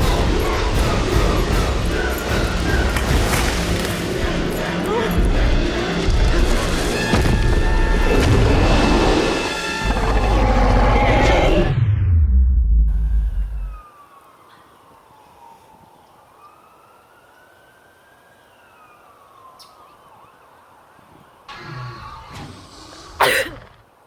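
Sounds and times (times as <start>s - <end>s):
faint wailing siren: 0.0s - 3.2s, 12.9s - 22.4s
deep rumble: 0.0s - 13.8s.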